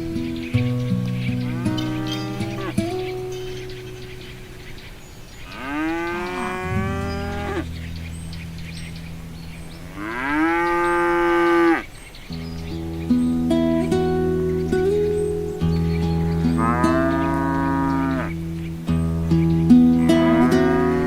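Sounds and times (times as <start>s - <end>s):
soft background music: 0.0s - 4.5s, 12.4s - 21.0s
cow mooing: 1.5s - 2.7s, 5.5s - 7.7s, 9.8s - 11.9s, 16.5s - 18.4s, 20.0s - 21.0s.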